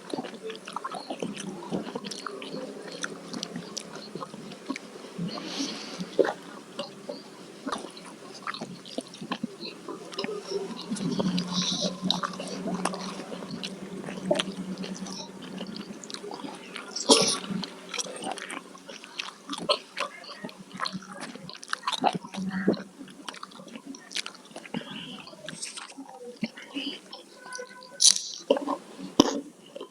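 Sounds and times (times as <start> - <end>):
wet chewing and lip smacks: 20.7 - 24.8.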